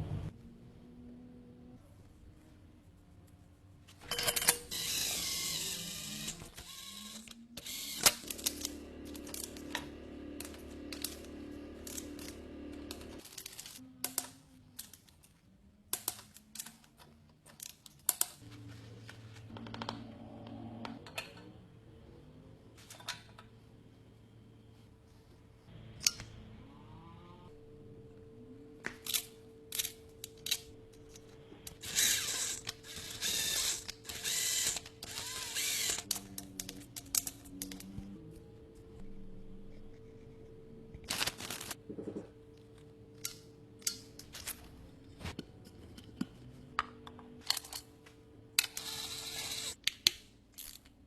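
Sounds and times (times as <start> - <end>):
low steady hum: 18.4 - 49.7.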